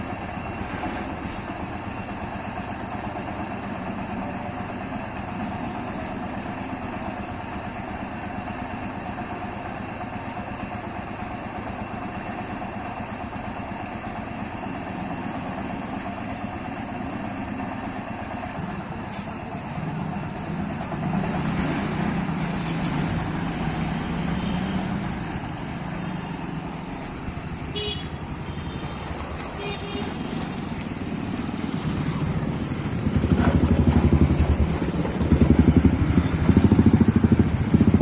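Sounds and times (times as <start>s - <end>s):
vehicle engines idling: 0.0s - 38.0s
short horn beeps: 27.8s - 29.0s.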